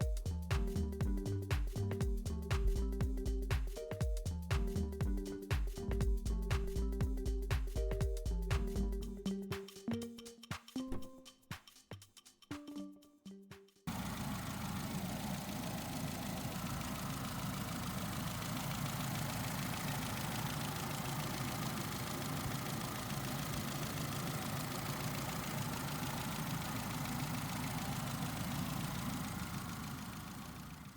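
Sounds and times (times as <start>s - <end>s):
car engine idling: 13.9s - 30.9s.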